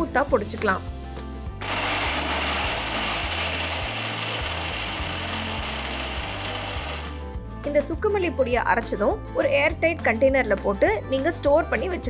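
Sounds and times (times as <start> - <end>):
electric mixer grinder running: 1.6 - 7.3.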